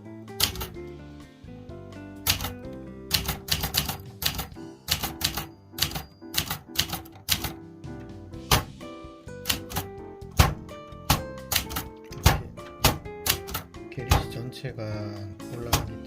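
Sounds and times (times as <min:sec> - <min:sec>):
background music: 0:00.0 - 0:16.0
typewriter keys clacking: 0:00.4 - 0:00.8, 0:02.2 - 0:07.6, 0:09.4 - 0:14.3.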